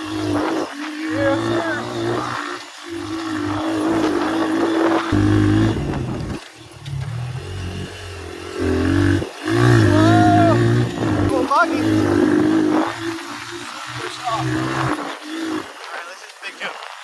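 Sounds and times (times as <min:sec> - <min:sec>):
wind noise on microphone: 0:00.0 - 0:02.4, 0:03.0 - 0:07.8
dirt bike engine revving: 0:00.0 - 0:17.0.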